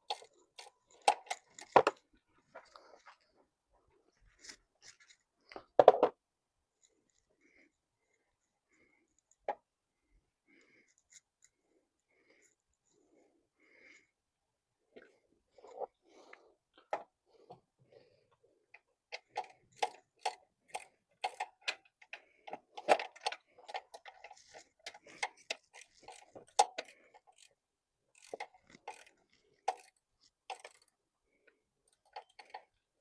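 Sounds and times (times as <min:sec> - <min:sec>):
ratchet wrench clicking: 0:19.1 - 0:21.8, 0:24.0 - 0:27.5, 0:28.1 - 0:30.9.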